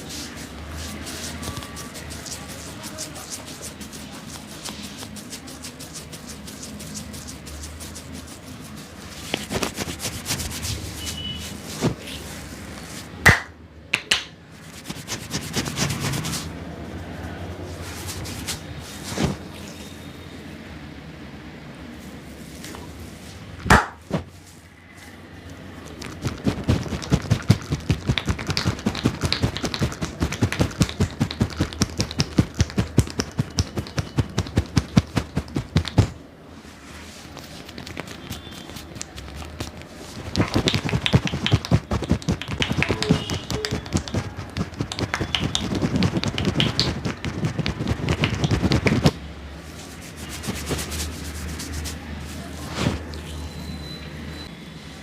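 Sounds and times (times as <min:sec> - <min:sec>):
hands slapping and tapping: 0:09.2 - 0:10.7, 0:13.2 - 0:16.4, 0:23.6 - 0:24.2, 0:26.0 - 0:36.2, 0:37.4 - 0:49.2, 0:50.3 - 0:51.9.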